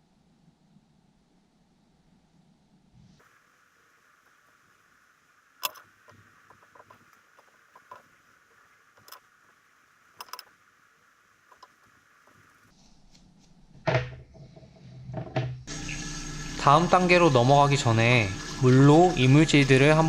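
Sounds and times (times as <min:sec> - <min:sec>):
faint steady hiss: 0:00.0 - 0:13.6.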